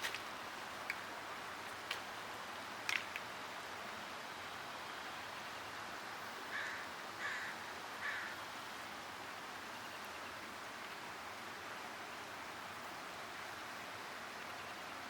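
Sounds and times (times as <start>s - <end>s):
bird calling: 6.5s - 8.4s.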